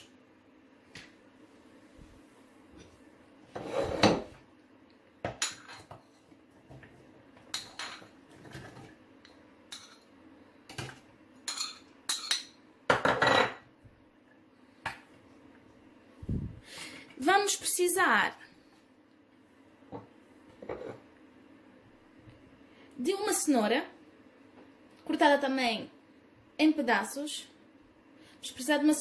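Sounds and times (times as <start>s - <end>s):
dishes and utensils clinking: 5.3s - 6.1s, 7.4s - 8.8s, 9.7s - 10.1s, 10.8s - 13.7s.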